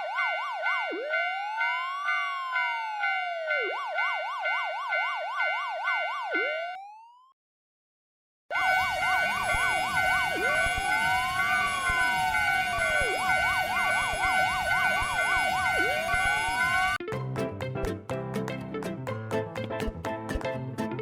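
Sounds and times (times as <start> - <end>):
police siren yelp and wail: 0.0 - 7.3, 8.5 - 17.0.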